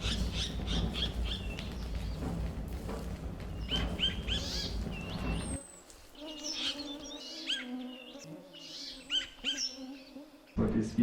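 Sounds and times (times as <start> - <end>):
wind noise rumble: 0.0 - 5.6
bird chirping calls: 0.0 - 10.2.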